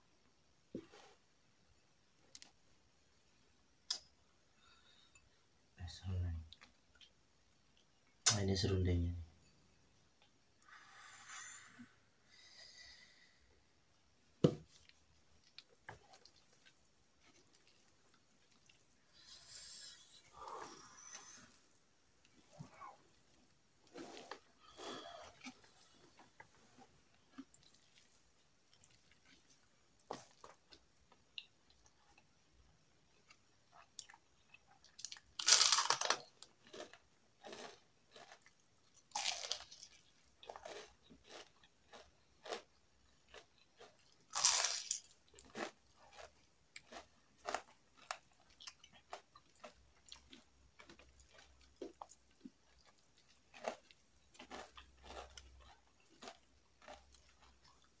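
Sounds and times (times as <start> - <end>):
chewing: 14.7 - 32.3, 33.1 - 58.0
crispy chicken skin crunching: 35.0 - 38.4, 43.3 - 46.2.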